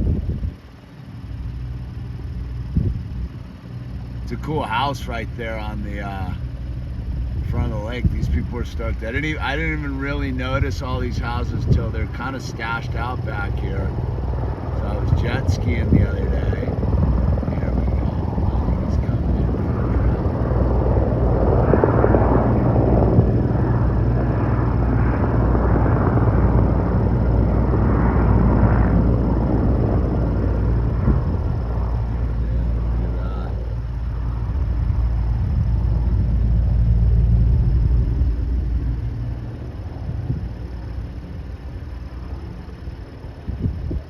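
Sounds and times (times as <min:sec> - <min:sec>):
helicopter rotor and engine rumble: 0:00.0 - 0:44.0.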